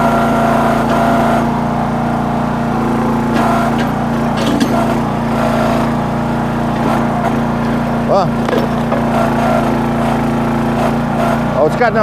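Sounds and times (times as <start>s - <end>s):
small engine running under load: 0.0s - 12.0s.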